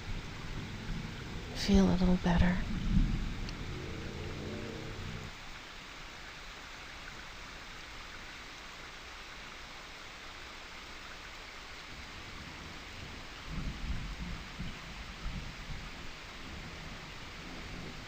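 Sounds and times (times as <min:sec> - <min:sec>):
thunder rolling: 0:00.0 - 0:05.4
rain falling: 0:00.0 - 0:18.0.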